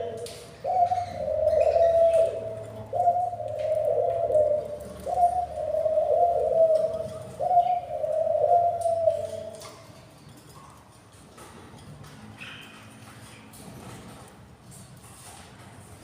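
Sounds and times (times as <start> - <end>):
bird cooing: 0.0 - 9.8.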